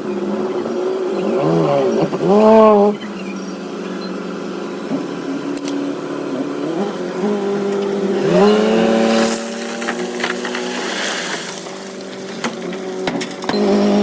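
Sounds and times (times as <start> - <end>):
diesel engine revving: 0.0 - 14.0
rattling scraping clatter: 7.5 - 14.0.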